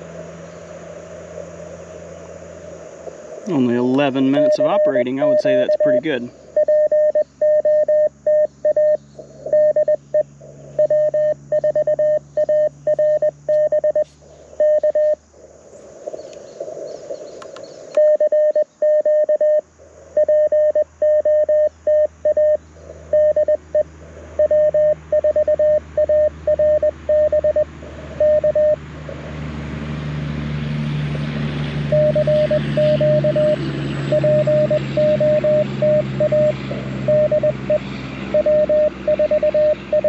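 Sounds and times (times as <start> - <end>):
receiver hiss: 0.0 - 28.8
morse code tone: 3.5 - 10.0, 10.8 - 15.2, 18.0 - 19.6, 20.2 - 23.6, 24.4 - 28.8, 31.9 - 40.0.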